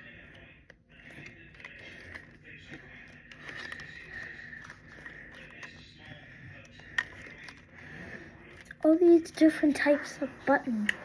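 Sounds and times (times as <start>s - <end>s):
light clicks and scrapes: 0.7s - 8.8s.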